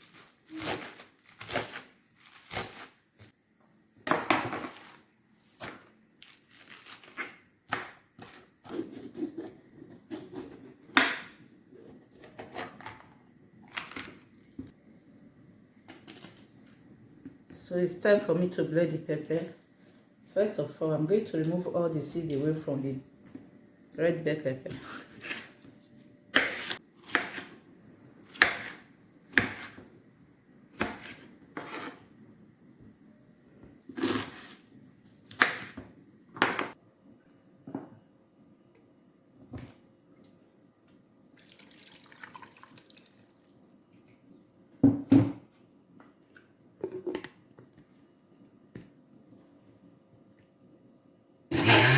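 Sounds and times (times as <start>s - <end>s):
crinkling and rustling handling: 4.6s - 7.5s
knife cutting bell pepper: 26.3s - 27.6s, 28.3s - 29.8s.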